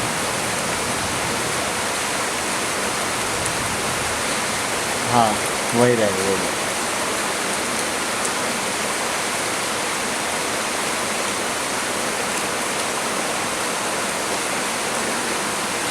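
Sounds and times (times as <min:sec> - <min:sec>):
heavy rain falling: 0:00.0 - 0:15.9.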